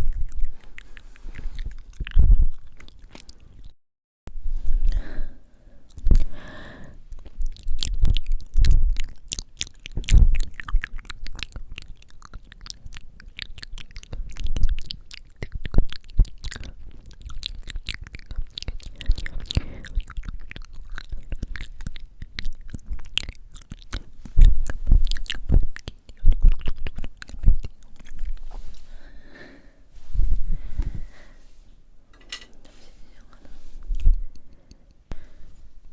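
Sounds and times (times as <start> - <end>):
lip and tongue clicks: 0.0 - 3.8, 5.9 - 28.7
breath puffs on microphone: 28.4 - 31.8.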